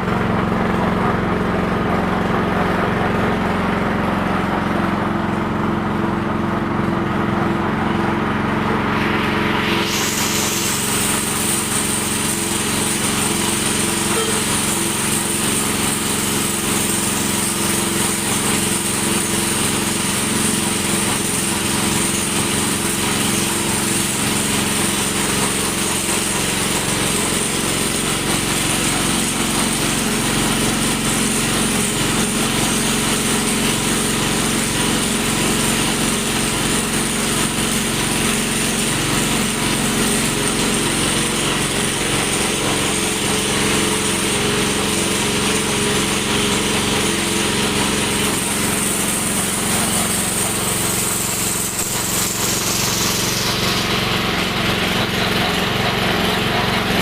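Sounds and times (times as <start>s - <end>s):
pellet mill droning: 0.0s - 57.0s.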